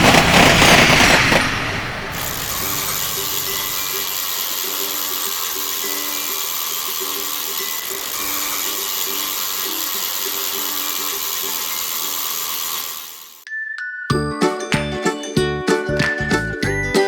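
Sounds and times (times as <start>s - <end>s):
train wheels rushing on rails: 0.0s - 5.4s.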